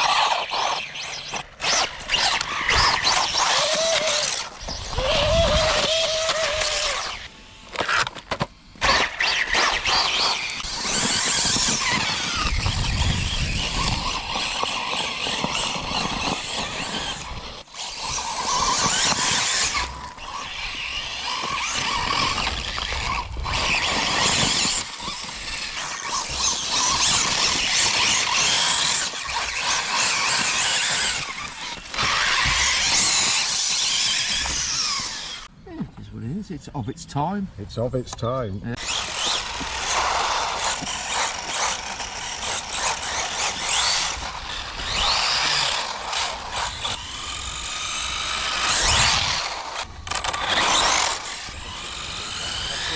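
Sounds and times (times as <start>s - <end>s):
rc car motor whine: 0.0s - 35.6s, 38.7s - 52.9s
tyre noise: 0.0s - 36.1s.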